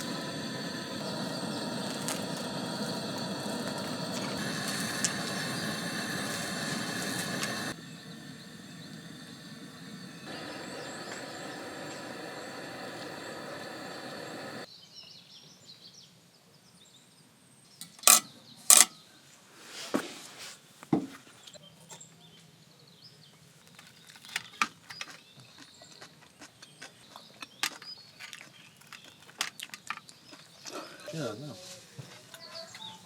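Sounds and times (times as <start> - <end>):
steady hum: 0.0 - 14.7.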